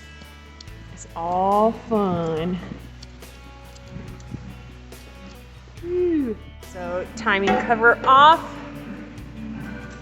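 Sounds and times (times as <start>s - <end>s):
background music with held tones: 0.0s - 10.0s.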